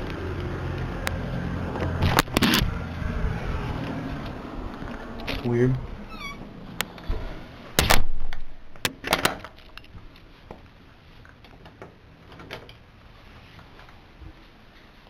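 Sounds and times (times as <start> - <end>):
loud clunks and thuds: 7.1 - 9.4.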